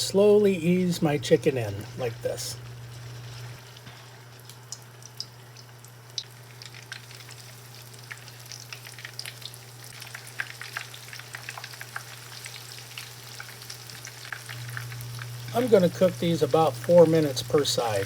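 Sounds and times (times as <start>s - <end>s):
low hum: 0.0s - 4.2s, 14.4s - 17.6s
chicken frying in oil: 0.1s - 18.0s.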